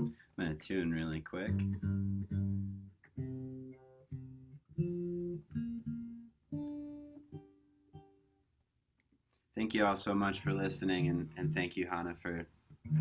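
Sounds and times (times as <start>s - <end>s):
guitar strings plucked: 1.1s - 8.2s, 10.2s - 11.9s, 12.8s - 13.0s.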